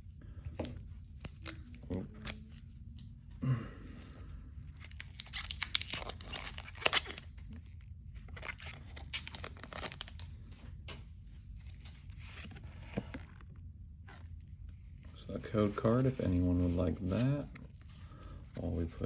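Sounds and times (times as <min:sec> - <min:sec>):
foil wrapper tearing and crinkling: 0:04.7 - 0:07.6, 0:08.2 - 0:10.3.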